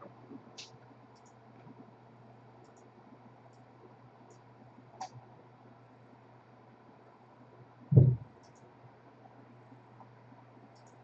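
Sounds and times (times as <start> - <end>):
low steady hum: 0.0 - 11.0
computer mouse clicks: 0.6 - 1.4, 2.6 - 2.9, 4.3 - 5.2, 8.0 - 8.7, 10.7 - 11.0.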